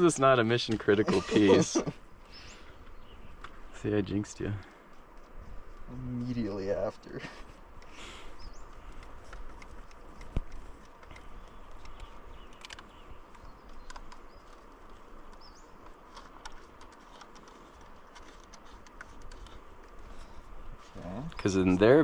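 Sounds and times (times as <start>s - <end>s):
quiet outdoor ambience: 0.0s - 22.0s
bird chirp: 2.2s - 4.7s, 7.3s - 9.1s, 11.1s - 16.7s
climbing gear clicking and tapping: 7.2s - 21.5s.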